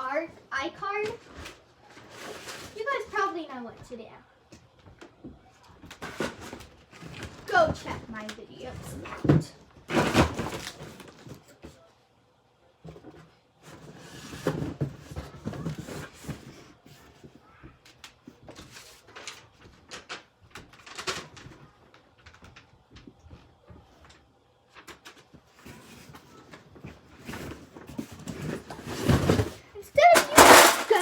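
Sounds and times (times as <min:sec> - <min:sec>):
knocks and clunks of handling: 0:12.8 - 0:24.2, 0:24.8 - 0:31.0
rustling: 0:25.4 - 0:31.0.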